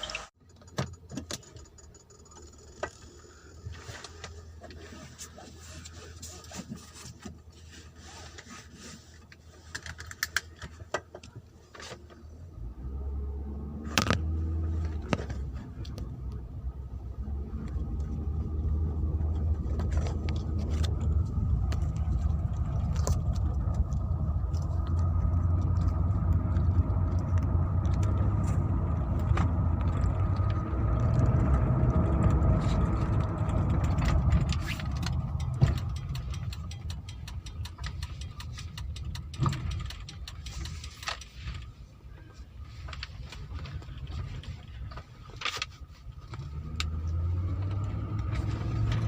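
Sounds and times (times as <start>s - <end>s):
light clicks and rattles: 0.4s - 3.2s, 19.2s - 41.8s
car engine starting and idling: 9.3s - 49.0s.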